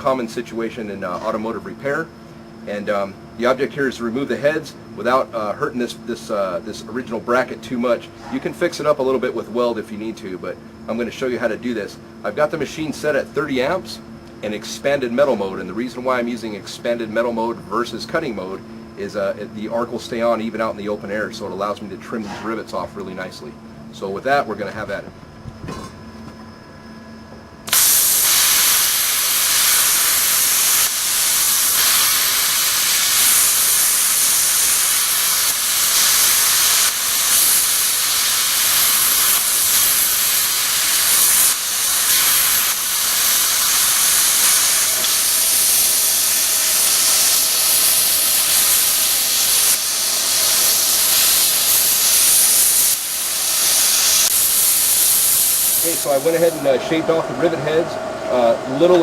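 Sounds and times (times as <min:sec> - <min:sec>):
plasma cutter hissing: 0:27.7 - 0:59.0.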